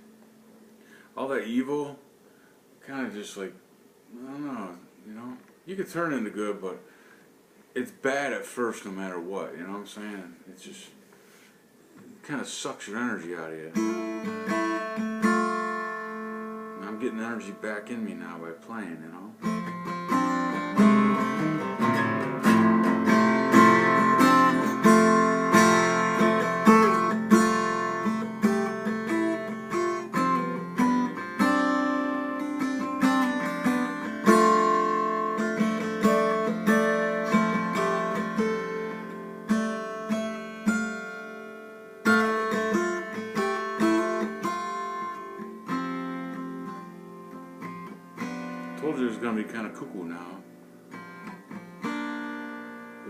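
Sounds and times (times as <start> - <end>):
acoustic guitar strums and picking: 12.0 - 53.0.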